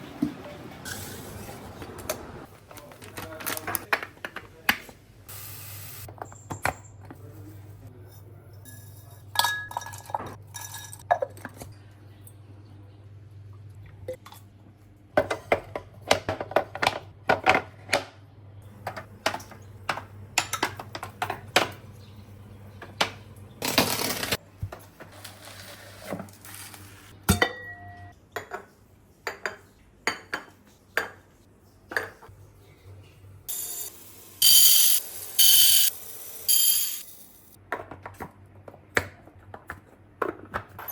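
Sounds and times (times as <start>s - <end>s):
dishes and utensils clattering: 8.0s - 11.7s, 18.8s - 22.2s
high beep: 34.4s - 35.9s, 36.5s - 37.0s.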